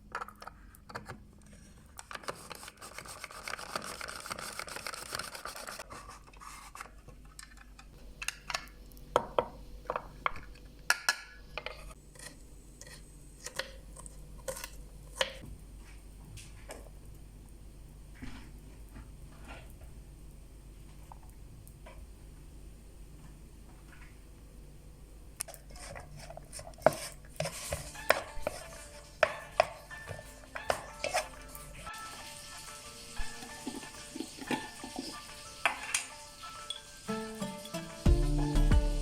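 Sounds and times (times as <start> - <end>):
rubbing or scraping: 25.5 - 29.3
utensils and dishes clinking: 27.7 - 38.0.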